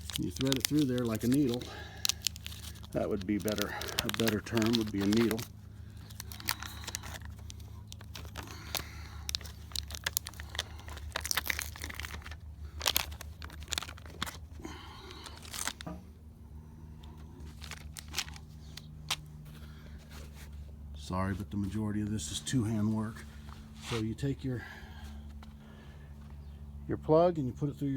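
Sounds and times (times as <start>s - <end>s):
rustling and crinkling: 0.0s - 24.1s
steady low hum: 0.0s - 27.9s.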